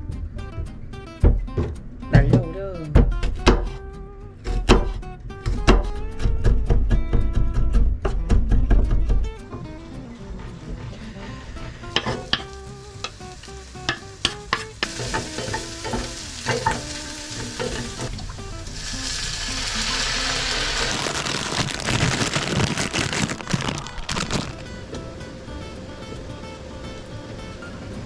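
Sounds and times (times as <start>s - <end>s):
faint background music: 0.0s - 28.0s
stirring and scraping in a pan: 10.2s - 21.6s
food sizzling in a pan: 10.5s - 28.0s
utensils knocking and clattering: 13.9s - 18.3s.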